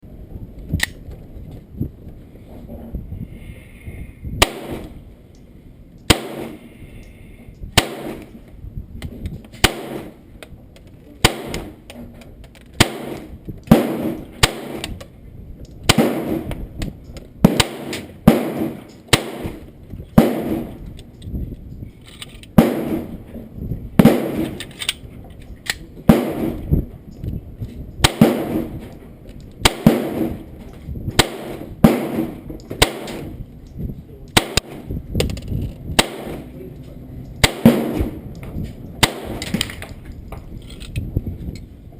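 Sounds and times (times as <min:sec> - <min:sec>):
pistol shots: 0:04.4 - 0:05.0, 0:06.1 - 0:06.7, 0:07.8 - 0:08.4, 0:09.6 - 0:10.2, 0:11.2 - 0:11.8, 0:12.8 - 0:15.0, 0:15.8 - 0:16.6, 0:17.4 - 0:20.8, 0:22.6 - 0:23.2, 0:24.0 - 0:24.6, 0:26.1 - 0:26.7, 0:28.0 - 0:28.9, 0:29.6 - 0:30.5, 0:31.2 - 0:33.4, 0:34.3 - 0:34.9, 0:36.0 - 0:36.5, 0:37.4 - 0:38.3, 0:39.0 - 0:39.7.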